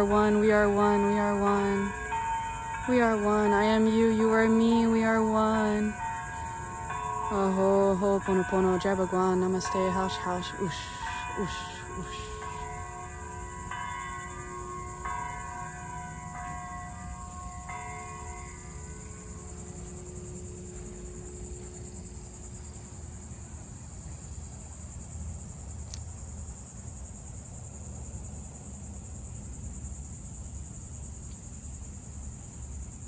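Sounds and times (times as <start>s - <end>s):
church bells tolling: 0.0s - 22.6s
high-pitched insect drone: 0.0s - 33.0s.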